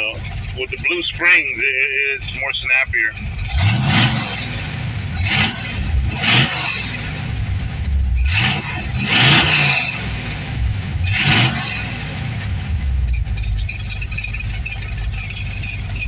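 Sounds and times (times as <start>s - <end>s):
car engine idling: 0.0s - 16.0s
quick throttle revs: 3.3s - 7.4s, 8.2s - 12.5s.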